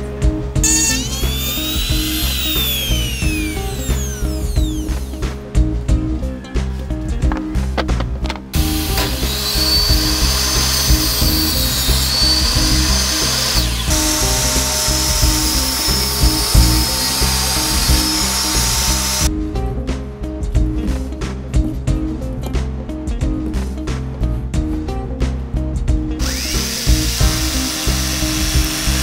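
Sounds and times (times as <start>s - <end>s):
background music with steady beat: 0.0s - 29.0s
power tool hissing: 0.6s - 5.3s, 8.6s - 19.3s, 26.2s - 29.0s.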